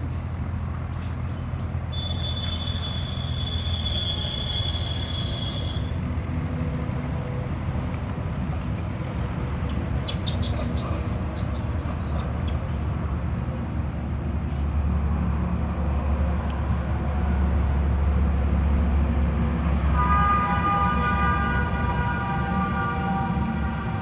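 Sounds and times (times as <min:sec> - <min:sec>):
moving vehicle rumble: 0:00.0 - 0:24.0
vehicle horn: 0:02.0 - 0:05.9, 0:19.8 - 0:24.0.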